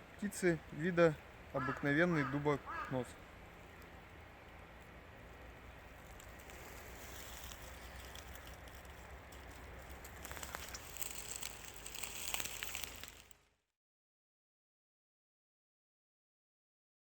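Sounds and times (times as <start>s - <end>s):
rustling and crackling clicks: 5.9s - 13.4s.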